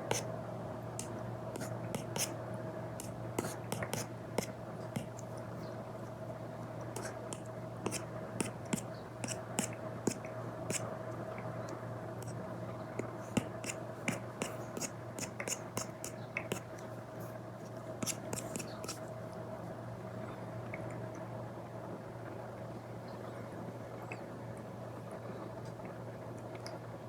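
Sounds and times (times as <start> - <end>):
steady hiss with low hum: 0.0 - 27.0
stylus tapping on tablet screen: 3.0 - 5.1, 13.0 - 16.6.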